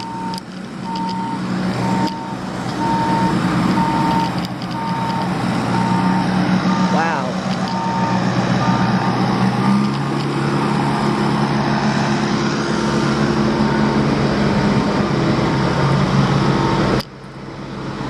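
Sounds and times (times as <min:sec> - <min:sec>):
backup beeper: 0:00.0 - 0:09.0
diesel engine running: 0:00.0 - 0:18.0.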